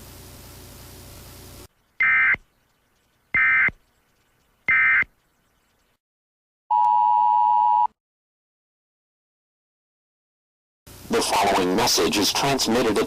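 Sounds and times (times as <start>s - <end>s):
buzzing data tone bursts: 2.0s - 2.4s, 3.3s - 5.8s.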